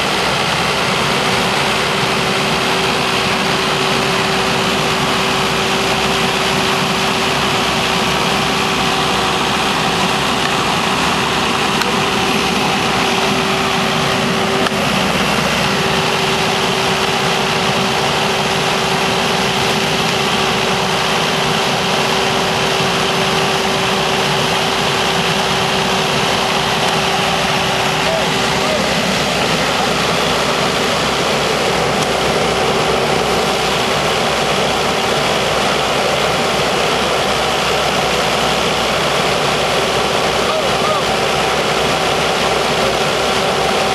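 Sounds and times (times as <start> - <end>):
engine idling: 0.0 - 43.9.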